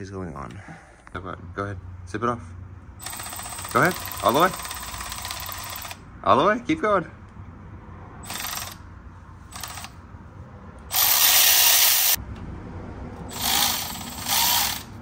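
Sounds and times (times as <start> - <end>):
power ratchet spinning bolt: 3.0 - 6.0, 8.2 - 8.8, 9.5 - 10.0, 10.9 - 12.2, 13.3 - 15.0.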